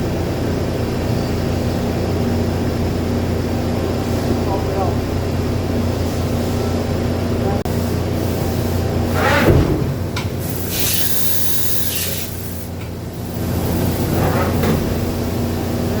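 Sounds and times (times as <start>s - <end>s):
machining center humming: 0.0s - 16.0s
loud spraying hiss: 10.4s - 12.8s.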